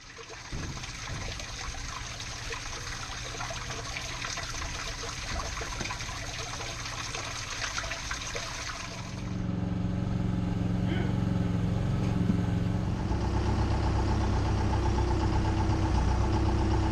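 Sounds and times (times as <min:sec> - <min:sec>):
water running and splashing: 0:00.0 - 0:09.4.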